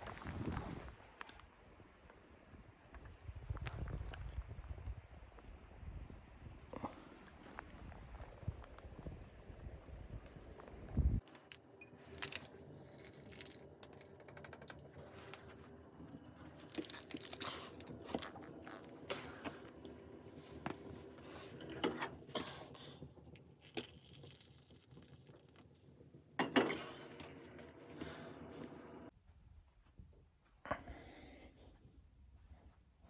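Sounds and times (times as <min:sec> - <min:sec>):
crunching and crinkling handling: 0:11.2 - 0:26.0.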